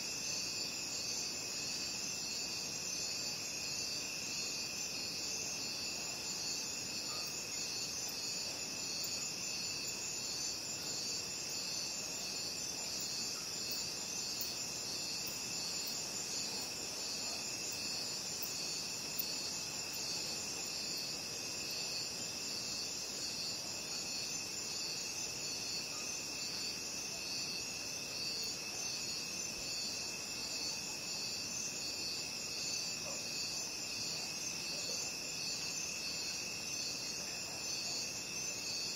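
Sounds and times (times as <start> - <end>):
crickets chirping: 0.0 - 38.9.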